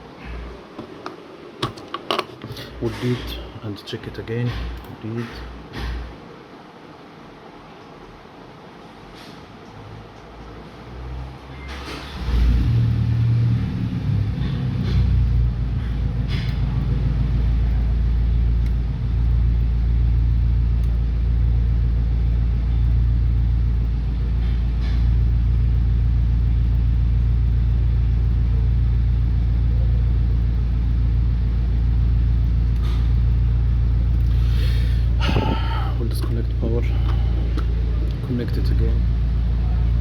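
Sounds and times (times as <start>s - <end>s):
loud low-pitched hum: 12.1s - 40.0s.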